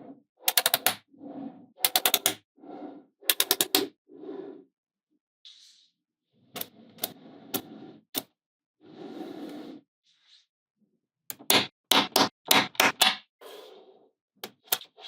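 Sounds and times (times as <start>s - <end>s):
magnetic balls clicking together: 1.8s - 2.4s.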